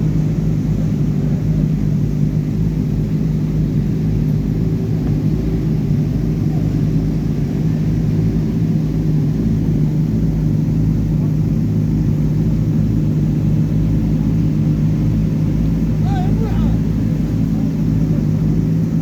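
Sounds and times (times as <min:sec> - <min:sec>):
engine running steadily: 0:00.0 - 0:19.0.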